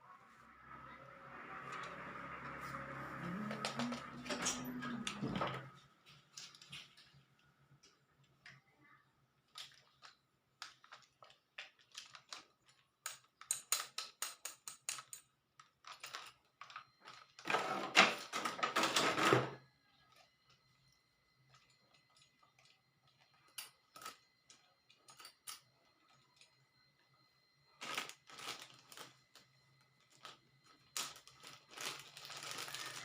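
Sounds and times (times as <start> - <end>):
crinkly packaging rustling: 9.5 - 13.0, 27.8 - 33.0
plastic toy parts clicking: 9.5 - 17.2.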